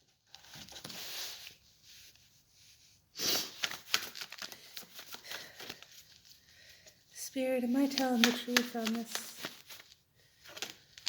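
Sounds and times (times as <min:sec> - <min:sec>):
woman sniffling while crying: 0:03.1 - 0:03.7.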